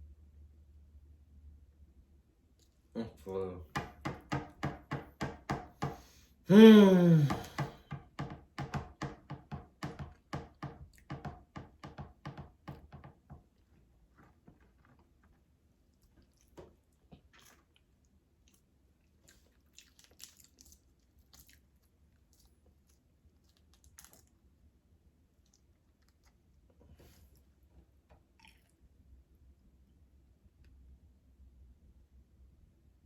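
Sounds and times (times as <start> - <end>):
faint crunches and smacks: 13.8 - 24.5
wet chewing clicks: 15.9 - 24.4, 28.3 - 28.8.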